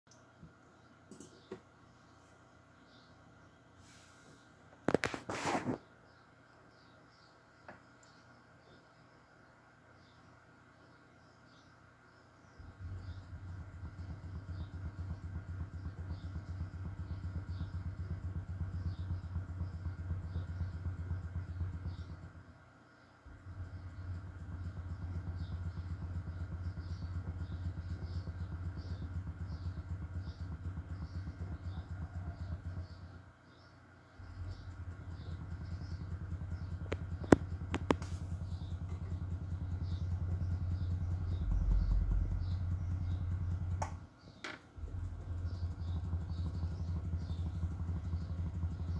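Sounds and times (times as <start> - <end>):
subwoofer deep pulsing bass: 12.6 - 22.4, 23.3 - 33.2, 34.2 - 44.1, 44.8 - 48.9
sharp clicks: 34.4 - 39.2.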